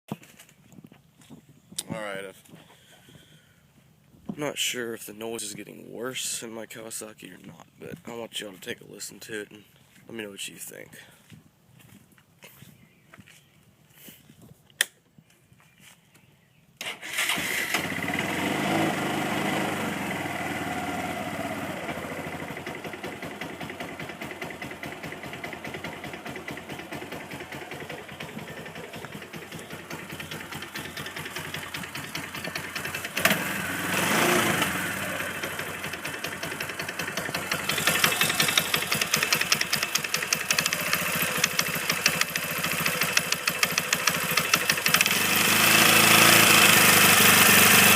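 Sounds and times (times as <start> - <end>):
quad bike engine knocking: 21.9 - 47.9.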